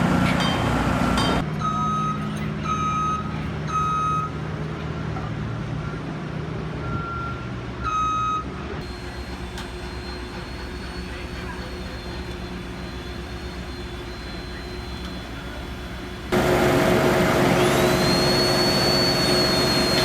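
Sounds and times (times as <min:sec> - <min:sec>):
heavy vehicle engine running: 0:00.0 - 0:20.0
reversing alarm beeping: 0:01.4 - 0:04.4, 0:06.8 - 0:16.4, 0:17.3 - 0:20.0.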